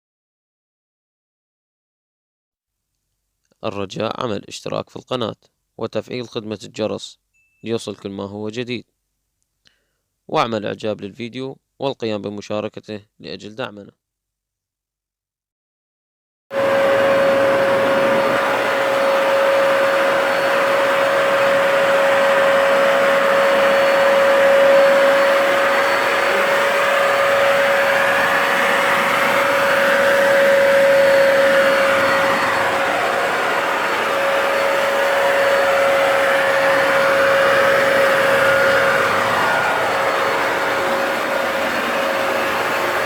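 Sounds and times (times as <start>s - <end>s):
vacuum cleaner running: 16.5s - 43.0s.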